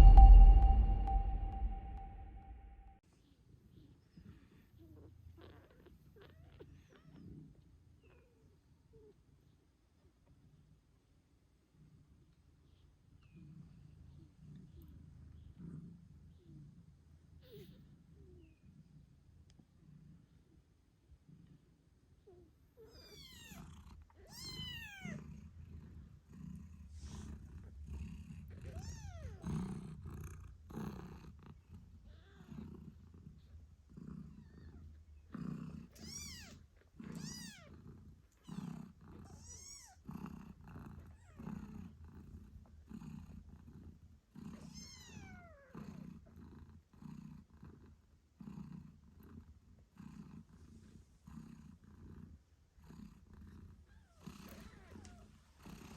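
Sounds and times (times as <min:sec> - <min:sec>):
cat purring: 0:12.7 - 0:55.9.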